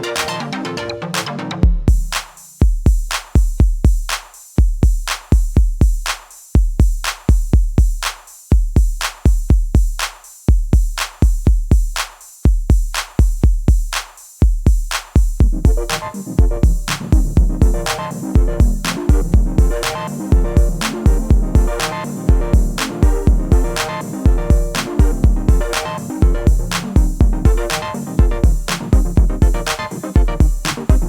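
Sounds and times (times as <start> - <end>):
drum-machine beat: 0.0 - 0.5, 1.1 - 31.0
electronic music: 0.0 - 2.5, 15.4 - 31.0.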